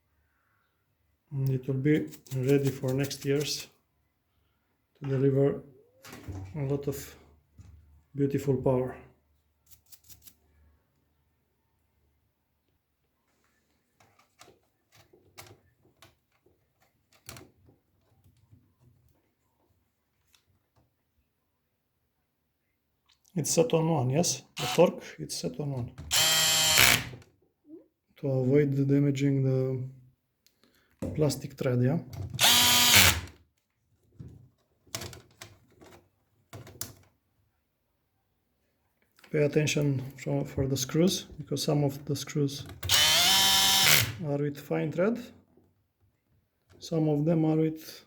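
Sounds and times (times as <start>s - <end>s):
electric screwdriver motor running: 26.1s - 27.1s, 32.4s - 33.3s, 42.9s - 44.2s.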